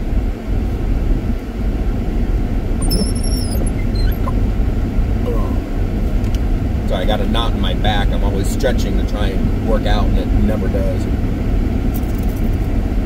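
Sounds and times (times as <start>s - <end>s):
car road and engine rumble: 0.0s - 13.0s
faint high chirp: 2.8s - 4.4s.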